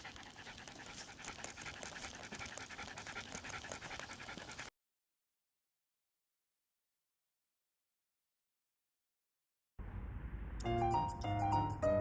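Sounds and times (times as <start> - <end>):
dog panting rapidly: 0.0 - 4.7.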